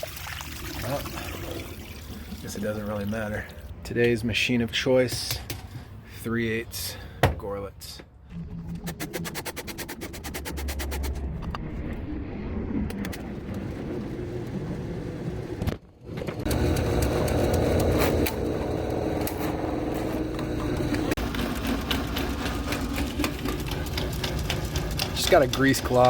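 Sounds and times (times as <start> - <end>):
drain-cleaning machine running: 16.4 - 26.0.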